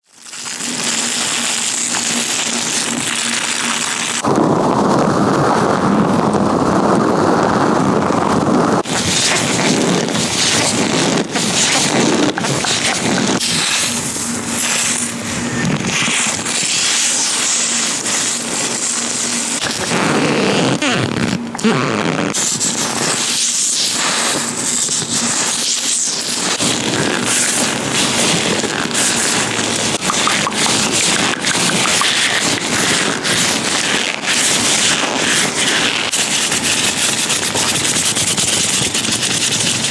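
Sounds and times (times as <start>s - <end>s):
short crackles: 0.1s - 39.9s
gloved hands rubbing on microphone: 8.8s - 25.7s, 26.3s - 39.9s.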